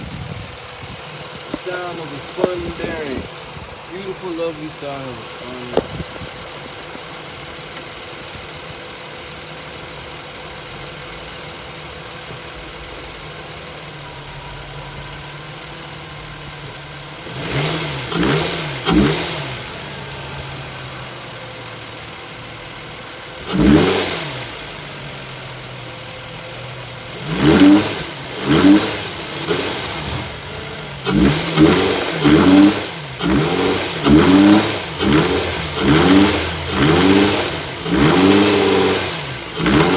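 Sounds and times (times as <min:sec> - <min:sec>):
car engine idling: 0:00.0 - 0:39.9
engine revving in short blips: 0:17.2 - 0:21.0, 0:23.4 - 0:25.2, 0:27.1 - 0:39.9.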